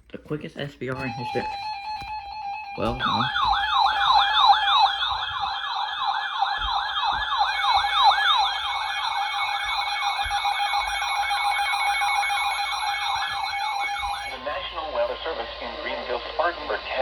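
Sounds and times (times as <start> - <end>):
electronic yelping alert tone: 1.1 - 5.8.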